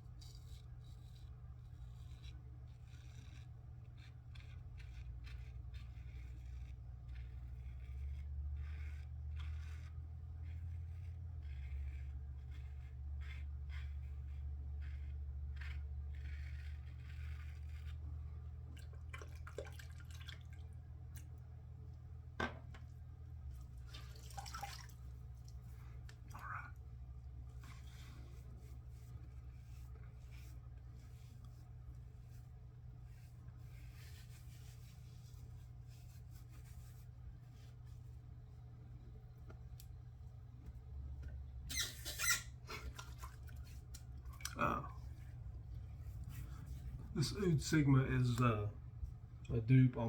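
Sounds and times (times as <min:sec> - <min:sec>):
low steady hum: 0:00.0 - 0:50.0
razor scraping stubble: 0:00.1 - 0:18.2
steady low hum: 0:42.5 - 0:50.0.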